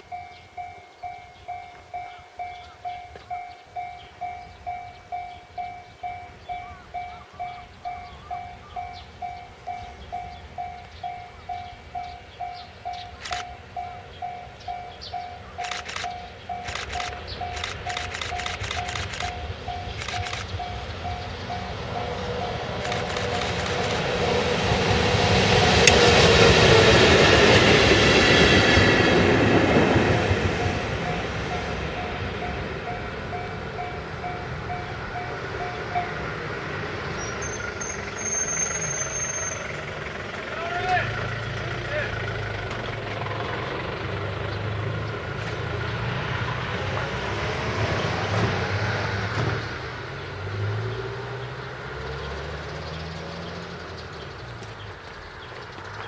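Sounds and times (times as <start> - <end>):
crossing bell ringing: 0.0 - 24.5, 28.4 - 41.0
train wheels rumbling on rail: 0.0 - 51.5
heavy vehicle passing: 9.8 - 56.0.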